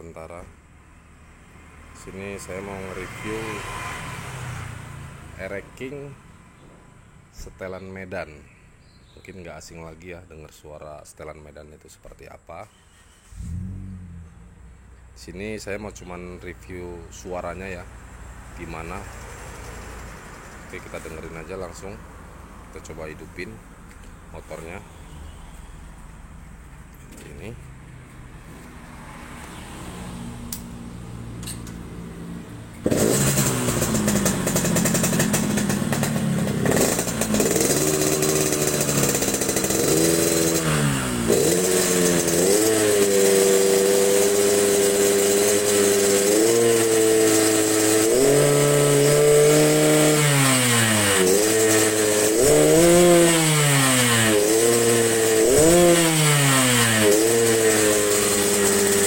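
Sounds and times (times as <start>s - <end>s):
motorcycle engine revving: 1.2s - 7.1s, 13.0s - 14.8s, 28.7s - 59.0s.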